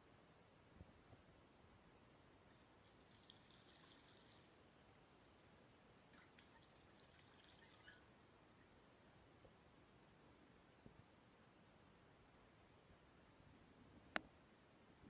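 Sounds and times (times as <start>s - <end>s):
water drips: 2.5s - 4.6s, 6.1s - 8.1s
faint trickle of water: 2.5s - 8.2s.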